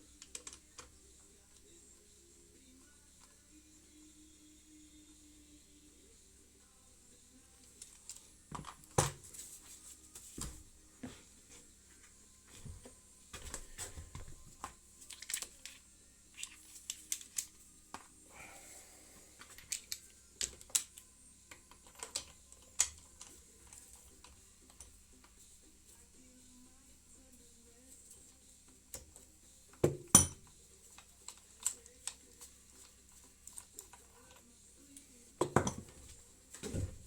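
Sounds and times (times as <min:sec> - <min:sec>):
clinks of hand tools and metal parts: 0:19.4 - 0:25.0, 0:29.7 - 0:34.5, 0:35.4 - 0:37.0.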